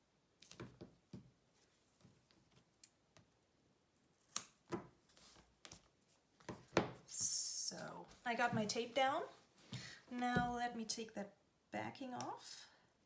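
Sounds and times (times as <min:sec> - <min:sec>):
tape snips and scrapes: 0:04.2 - 0:04.8.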